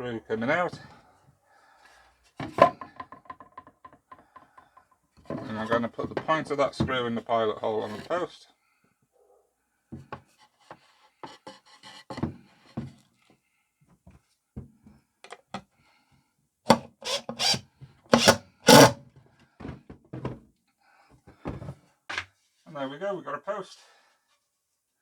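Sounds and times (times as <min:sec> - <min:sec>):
wood knocking and rubbing: 0:18.2 - 0:19.0.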